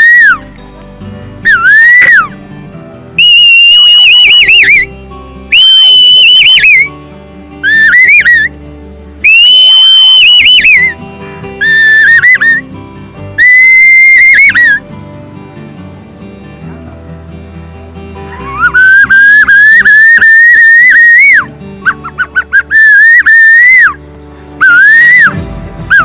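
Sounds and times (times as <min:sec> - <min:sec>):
man whistling bird calls: 0:00.0 - 0:00.5, 0:01.4 - 0:02.4, 0:03.2 - 0:04.9, 0:05.5 - 0:06.9, 0:07.6 - 0:08.5, 0:09.2 - 0:11.0, 0:11.6 - 0:12.7, 0:13.4 - 0:14.8, 0:18.4 - 0:24.0, 0:24.6 - 0:26.0
quiet background music: 0:00.0 - 0:26.0.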